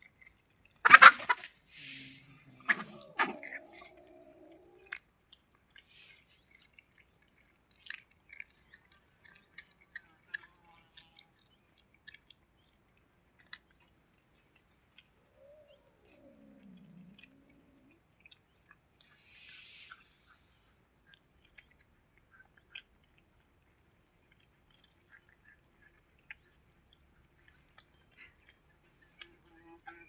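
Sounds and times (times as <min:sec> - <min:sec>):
cat chewing food: 0:00.0 - 0:01.5, 0:02.7 - 0:30.0
animal call rising and falling: 0:00.9 - 0:01.5.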